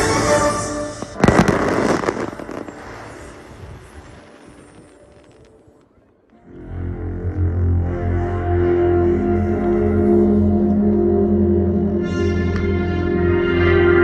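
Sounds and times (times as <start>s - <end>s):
firework crackling: 0.0s - 6.3s
music: 0.0s - 14.0s
firework bangs: 0.9s - 5.6s.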